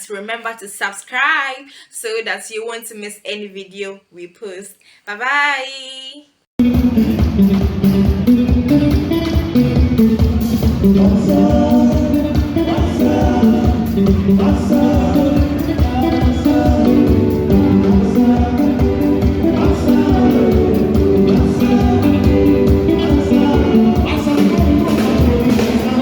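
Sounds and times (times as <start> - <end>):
upbeat song with singing: 8.8 - 26.0.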